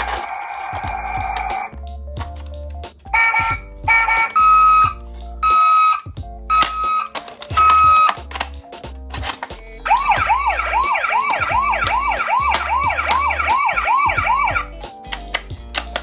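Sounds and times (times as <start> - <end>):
toy siren yelping: 9.9 - 14.6.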